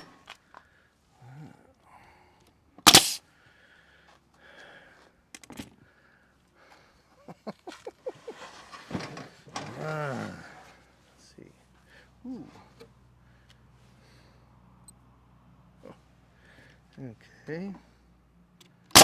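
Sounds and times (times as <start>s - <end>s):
nail gun firing: 2.9s - 3.2s.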